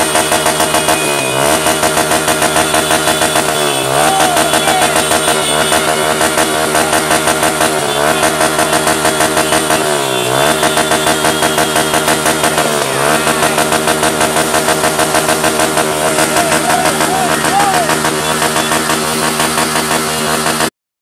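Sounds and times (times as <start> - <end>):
motorcycle engine revving: 0.0 - 20.7.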